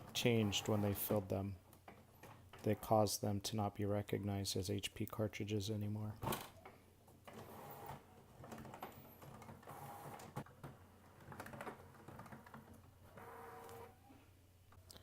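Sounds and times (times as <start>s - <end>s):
printer whirring and clicking: 0.0s - 1.2s, 7.3s - 13.9s.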